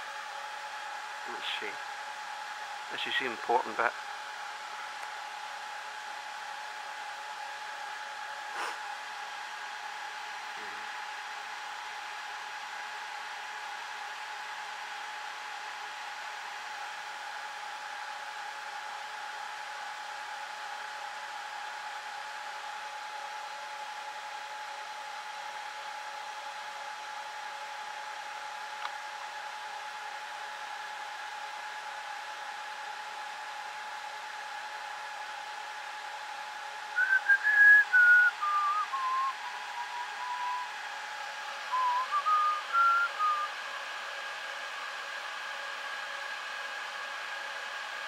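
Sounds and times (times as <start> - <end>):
server cooling fans whining: 0.0 - 48.0
person whistling a tune: 37.0 - 40.7, 41.7 - 43.5.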